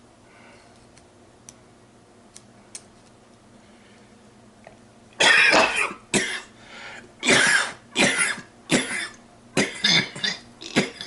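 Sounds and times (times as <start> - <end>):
man coughing: 5.2 - 6.5, 7.2 - 11.0.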